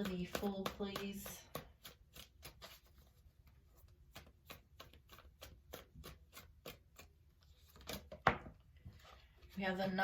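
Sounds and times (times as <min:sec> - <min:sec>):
cards being shuffled: 0:01.7 - 0:09.6.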